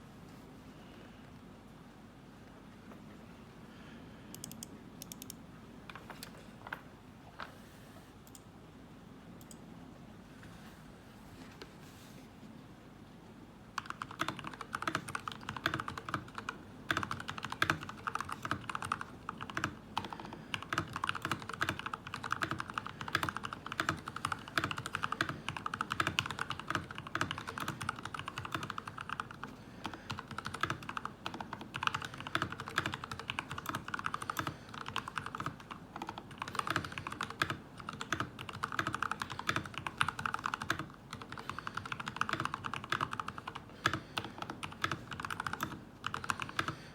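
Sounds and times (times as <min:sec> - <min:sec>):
fast mechanical keyboard typing: 0:13.8 - 0:46.9.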